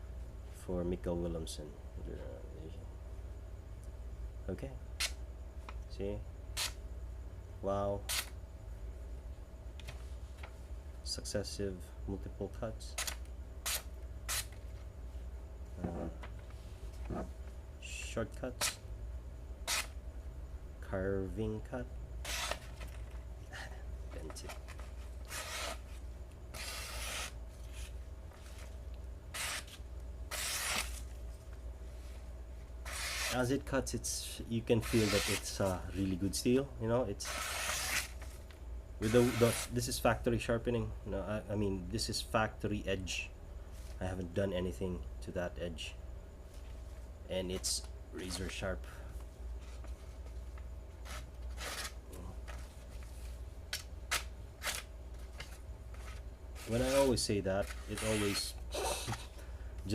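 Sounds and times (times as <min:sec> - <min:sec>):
low steady hum: 0:00.0 - 0:59.9
knife slicing through paper: 0:56.0 - 0:58.6.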